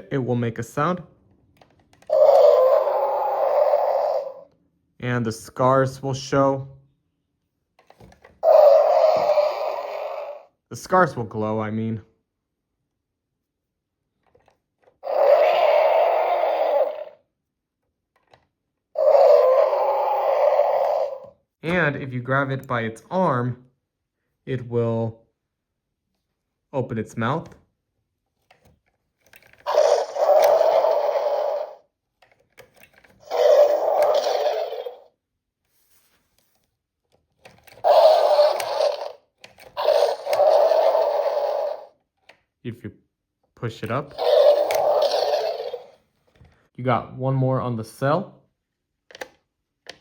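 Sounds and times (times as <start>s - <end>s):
electronic dinosaur roar: 2.1s - 4.5s, 8.4s - 10.6s, 15.0s - 17.2s, 19.0s - 21.4s, 29.6s - 31.8s, 33.2s - 35.1s, 37.8s - 42.0s, 44.1s - 46.0s.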